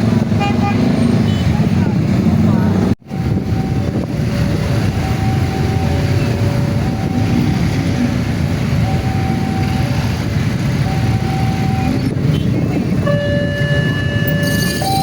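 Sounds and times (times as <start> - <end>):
level crossing alarm two-tone warning: 3.1 - 7.8, 8.7 - 10.2, 10.8 - 12.0, 13.0 - 15.0.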